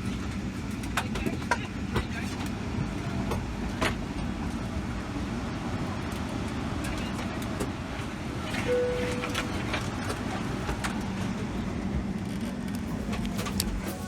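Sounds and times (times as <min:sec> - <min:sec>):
aircraft cabin hum: 0:00.1 - 0:14.0
short steady tone: 0:08.7 - 0:09.8.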